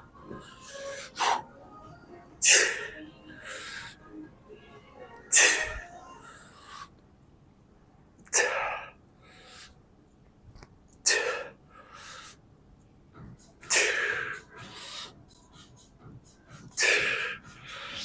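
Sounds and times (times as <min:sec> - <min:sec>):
softer breaths: 0:00.2 - 0:04.1.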